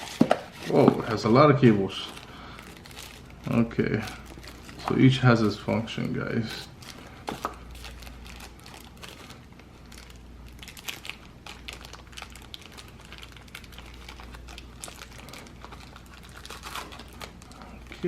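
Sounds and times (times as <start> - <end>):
plastic packaging crinkling: 0.0 - 18.0.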